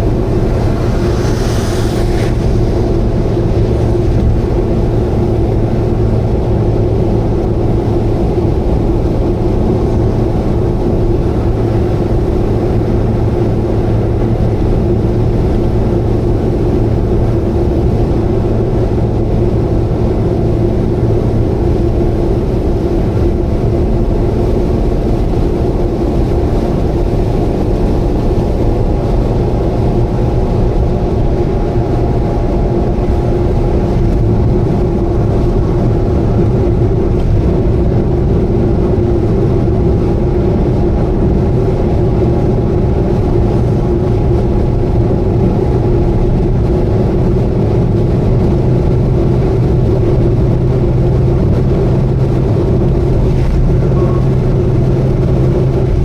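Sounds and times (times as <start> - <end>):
brief hiss: 0.0 - 4.4
car engine and road drone: 0.0 - 56.0.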